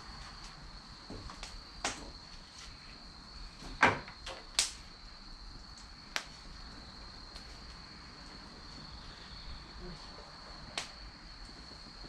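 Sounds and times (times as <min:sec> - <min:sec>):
firewood burning: 0:00.0 - 0:12.0
sharp crackling pops: 0:01.3 - 0:02.2, 0:04.2 - 0:05.0, 0:05.6 - 0:09.2, 0:10.7 - 0:11.9.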